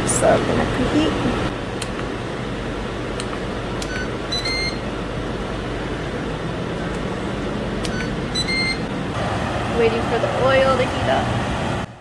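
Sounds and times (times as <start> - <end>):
air fryer fan humming: 0.0 - 12.0
short electronic beeps: 3.8 - 4.8, 7.9 - 8.8.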